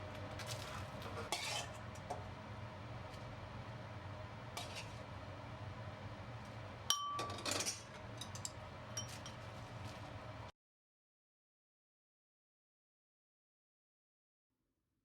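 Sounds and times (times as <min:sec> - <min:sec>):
kitchenware clinking: 0:06.9 - 0:09.4.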